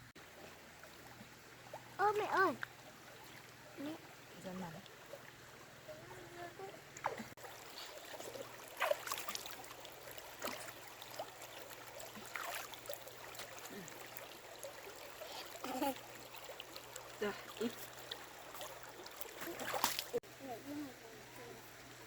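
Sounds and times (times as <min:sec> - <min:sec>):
water splashing and trickling: 0:00.0 - 0:22.0.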